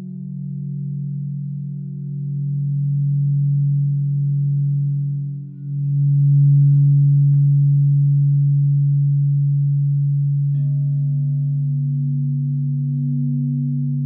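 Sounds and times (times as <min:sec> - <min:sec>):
crystal singing bowls ringing: 0:00.0 - 0:14.0
singing bowl struck with click: 0:05.7 - 0:14.0.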